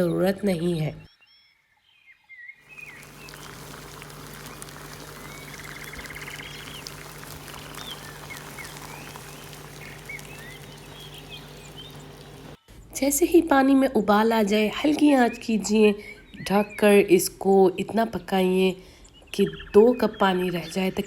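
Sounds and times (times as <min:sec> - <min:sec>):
birds chirping and calling: 0:02.7 - 0:12.6
even hiss: 0:02.7 - 0:12.6
steady low hum: 0:02.9 - 0:13.0.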